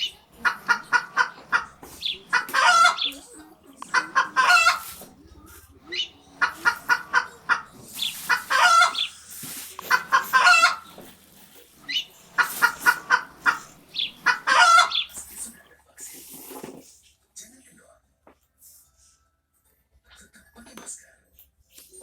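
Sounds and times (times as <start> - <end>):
chickens clucking: 0.0 - 15.8.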